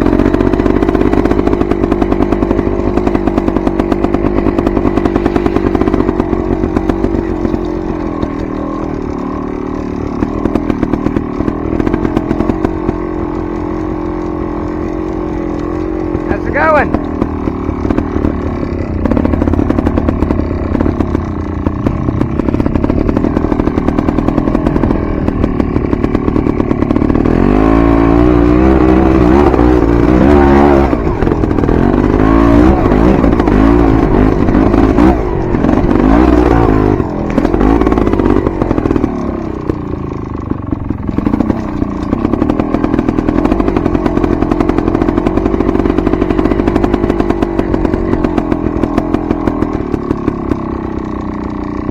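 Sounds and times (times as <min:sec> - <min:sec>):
dirt bike engine revving: 0:00.0 - 0:51.9.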